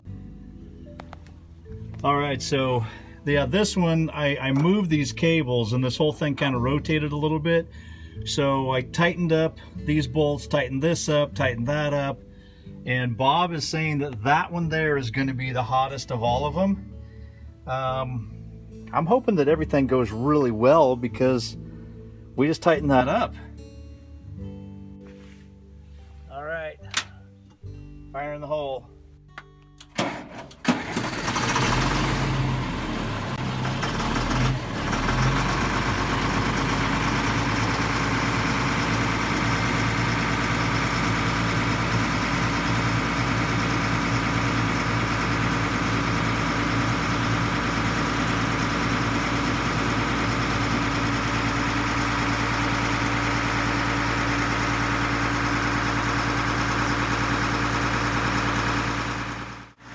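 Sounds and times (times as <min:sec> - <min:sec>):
diesel truck engine idling: 0:00.9 - 0:09.8, 0:29.9 - 0:59.9.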